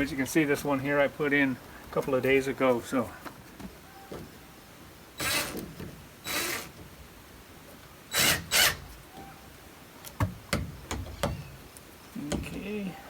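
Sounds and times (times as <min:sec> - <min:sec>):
drill driving screws into wood: 0:05.2 - 0:06.8, 0:08.1 - 0:08.9.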